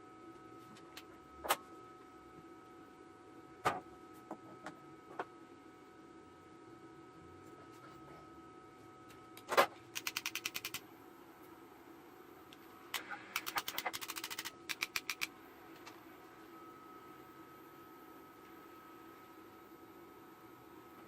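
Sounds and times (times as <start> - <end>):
faint hum: 0.0 - 21.0
sharp click: 9.4 - 10.8, 12.9 - 16.0
rapid evenly spaced clicks: 9.9 - 10.8, 12.9 - 15.3.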